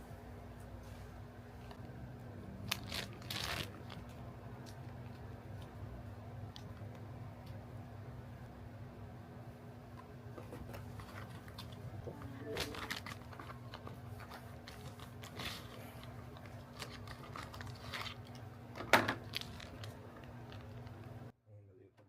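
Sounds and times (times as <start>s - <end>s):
steady low hum: 0.0s - 22.0s
packaging clicks and crinkles: 2.6s - 5.2s, 12.4s - 21.2s.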